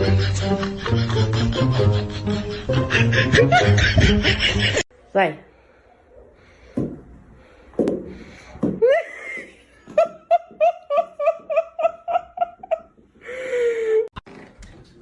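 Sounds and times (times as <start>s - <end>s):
person laughing hard: 0.0s - 4.8s, 8.8s - 14.1s.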